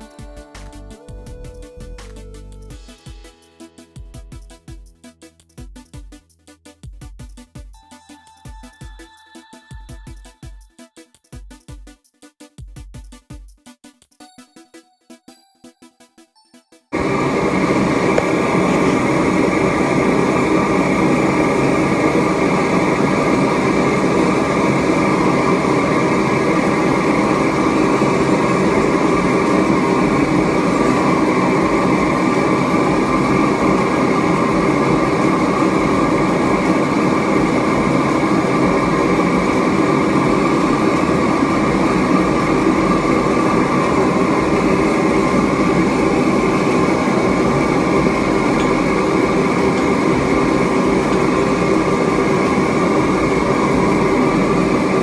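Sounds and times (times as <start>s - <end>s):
furnace roaring air and flame: 17.0s - 55.0s.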